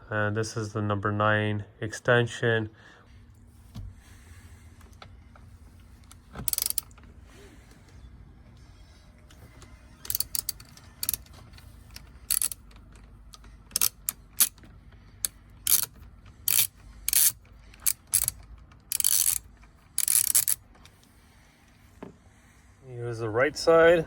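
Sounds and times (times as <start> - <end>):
ratchet wrench clicking: 6.4 - 7.0, 10.0 - 20.6.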